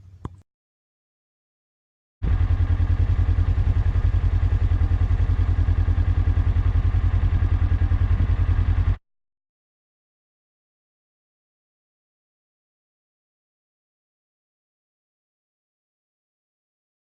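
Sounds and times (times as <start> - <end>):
tractor engine chugging: 2.3 - 8.9.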